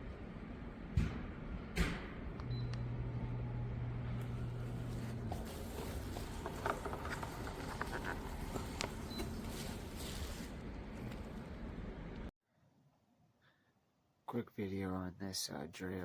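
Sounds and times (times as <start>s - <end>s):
fan heater blowing: 0.0s - 12.3s.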